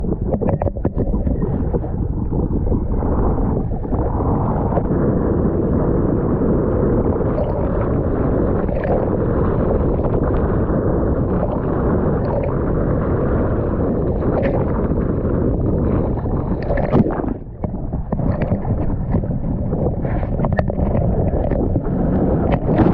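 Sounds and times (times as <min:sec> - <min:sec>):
wind rumble on microphone: 0:00.0 - 0:22.9
rushing water: 0:07.2 - 0:10.5, 0:11.2 - 0:22.9.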